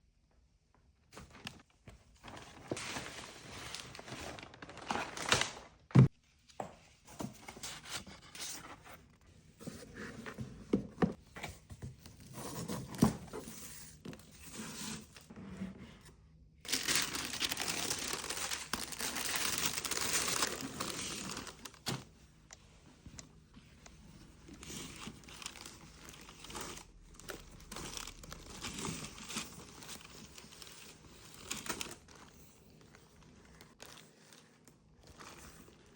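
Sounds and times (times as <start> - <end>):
paper packaging crinkling: 1.2 - 5.9, 16.7 - 22.0, 24.5 - 35.9.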